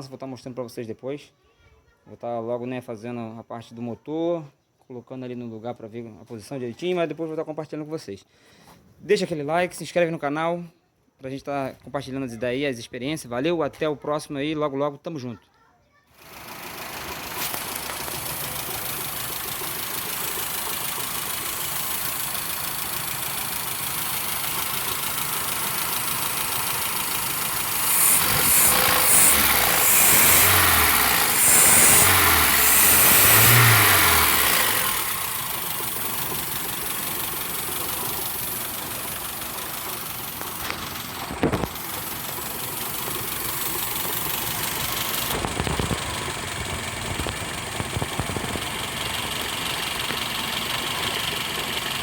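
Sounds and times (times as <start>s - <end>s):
car engine idling and revving: 16.2s - 52.0s.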